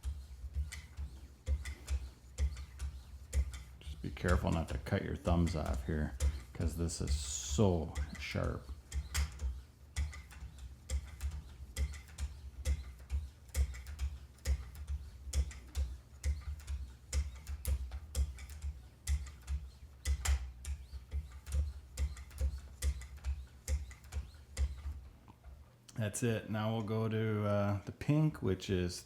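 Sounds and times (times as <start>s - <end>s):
knife sharpener ticks and knocks: 8.0s - 25.0s.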